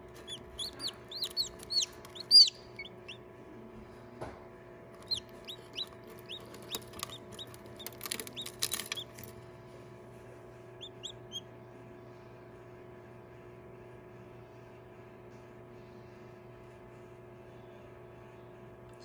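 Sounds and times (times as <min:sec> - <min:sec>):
chicks peeping: 0:00.0 - 0:03.2, 0:05.0 - 0:09.2, 0:10.8 - 0:11.4
steady low hum: 0:00.0 - 0:12.5
clicks and rustles: 0:00.1 - 0:02.5, 0:05.0 - 0:09.5.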